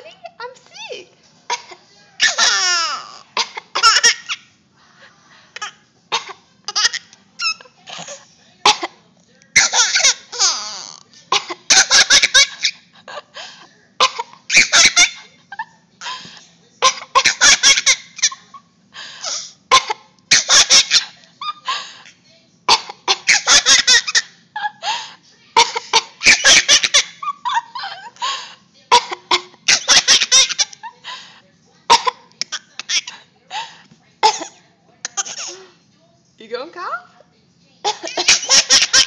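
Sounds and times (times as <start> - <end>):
adult coughing: 1.5 - 2.4, 3.3 - 4.2, 7.8 - 9.0, 11.3 - 12.3, 14.0 - 14.5, 25.6 - 27.0, 28.9 - 30.6, 31.9 - 35.8, 37.8 - 39.0
toddler laughing: 1.5 - 4.4.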